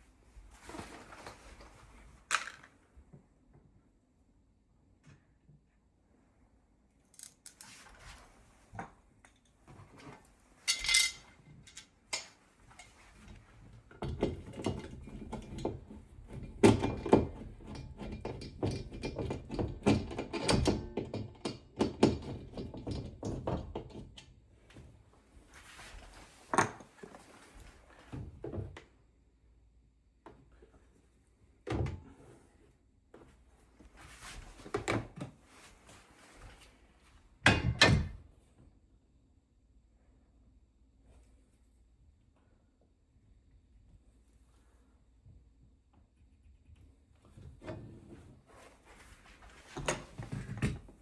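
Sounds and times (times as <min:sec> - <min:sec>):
tools and metal hardware clattering: 0:10.6 - 0:15.8.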